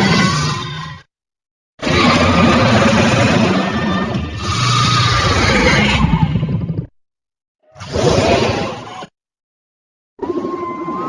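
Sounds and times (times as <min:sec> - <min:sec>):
harsh creature call: 0:00.0 - 0:01.1, 0:01.8 - 0:06.5.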